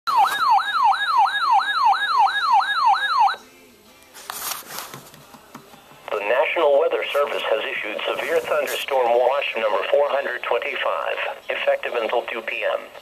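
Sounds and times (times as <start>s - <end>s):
alarm siren sweeping down: 0.1s - 3.4s.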